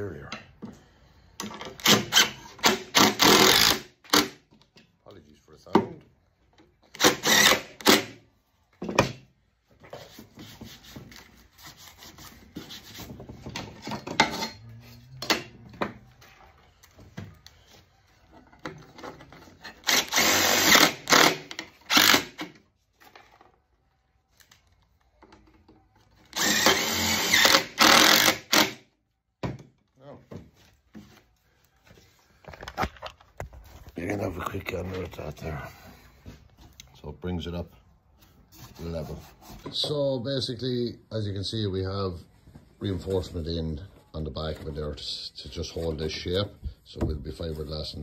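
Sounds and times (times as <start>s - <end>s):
power tool bursts: 1.8s - 4.4s, 7.0s - 8.2s, 19.8s - 22.5s, 26.4s - 28.8s.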